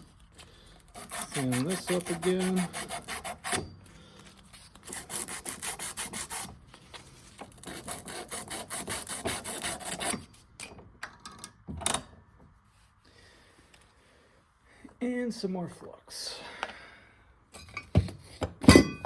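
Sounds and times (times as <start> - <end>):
hand sanding metal pipe: 0.9 - 3.6, 4.8 - 6.6, 7.6 - 10.2.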